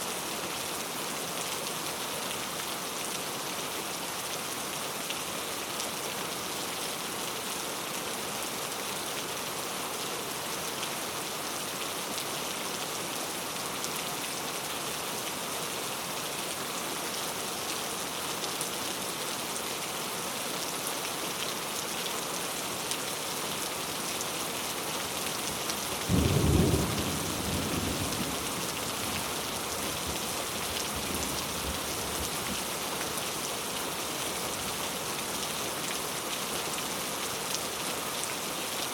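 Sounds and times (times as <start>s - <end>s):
steady rain: 0.0s - 38.9s
thunder clap rumbling: 26.1s - 28.5s.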